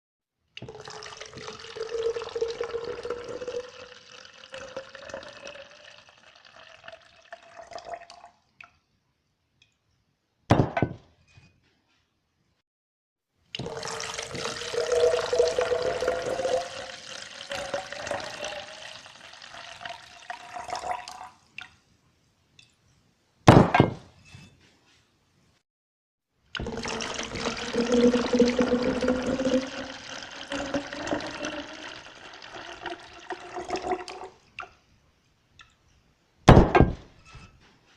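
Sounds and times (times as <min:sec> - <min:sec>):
water pouring into a container: 0:00.6 - 0:08.4, 0:13.6 - 0:21.5, 0:26.6 - 0:34.4.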